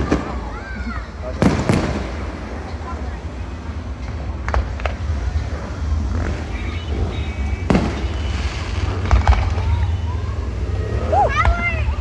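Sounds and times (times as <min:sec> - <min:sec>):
fireworks bangs and cracks: 0:00.0 - 0:12.0.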